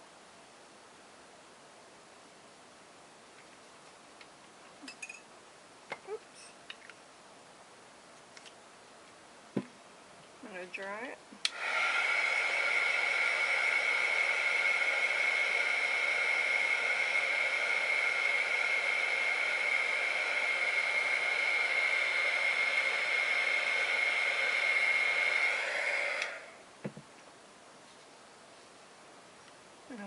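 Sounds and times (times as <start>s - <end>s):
soft knock: 9.6s - 9.8s, 26.8s - 27.1s
hot-air dryer whining: 11.4s - 27.0s.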